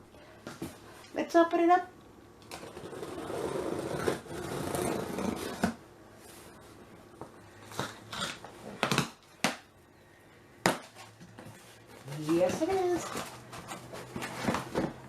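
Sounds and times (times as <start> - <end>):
cardboard packaging rustling: 10.8 - 15.0.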